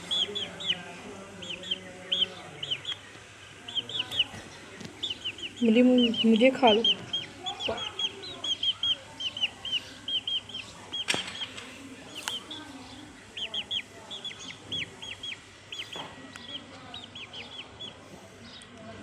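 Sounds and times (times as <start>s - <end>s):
small bird chirping: 0.0s - 18.7s
sharp clicks: 11.0s - 12.5s.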